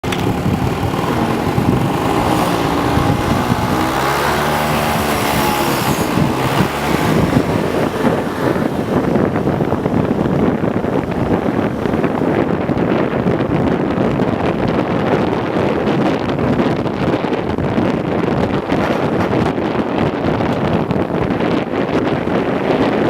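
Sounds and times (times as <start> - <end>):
car engine: 0.0 - 16.2
road noise: 0.0 - 23.0.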